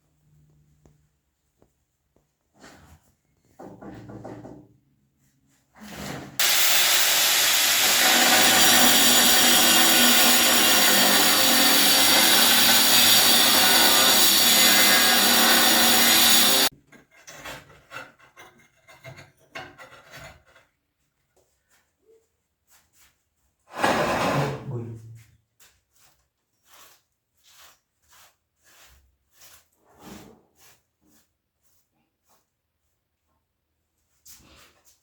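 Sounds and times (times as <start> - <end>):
power tool grinding: 6.4 - 16.7.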